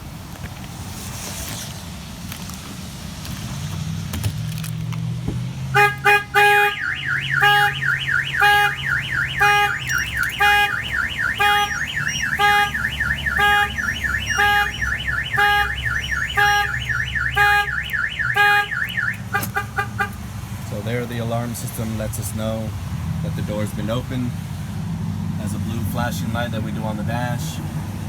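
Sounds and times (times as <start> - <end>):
car alarm warbling siren: 5.7 - 20.2
short horn-like blasts: 5.7 - 20.2.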